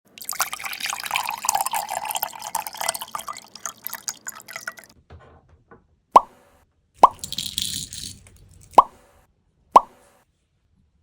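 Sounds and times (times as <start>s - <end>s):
coffee dripping onto ice: 0.2s - 4.9s.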